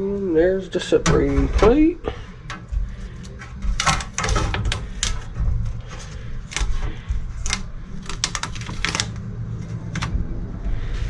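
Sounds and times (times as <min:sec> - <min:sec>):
steady low rumble: 0:00.0 - 0:11.0
metal parts clicking on workbench: 0:02.4 - 0:05.3, 0:07.4 - 0:10.1.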